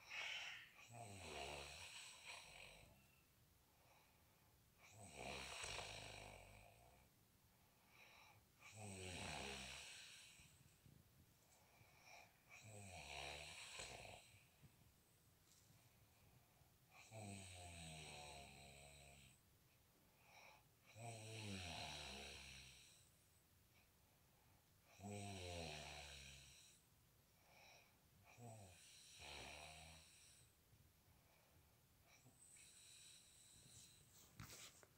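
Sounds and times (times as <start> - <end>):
faint breath: 0.0 - 0.8, 7.6 - 8.5
man snoring: 0.0 - 3.0, 4.8 - 7.0, 8.1 - 10.7, 11.8 - 14.5, 16.9 - 19.4, 20.3 - 23.1, 24.9 - 26.8, 27.5 - 30.5, 32.1 - 34.0.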